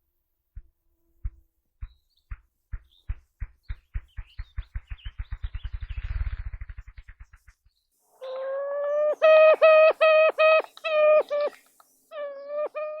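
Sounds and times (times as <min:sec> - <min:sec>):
nasal whining bird calls: 0:08.1 - 0:13.0.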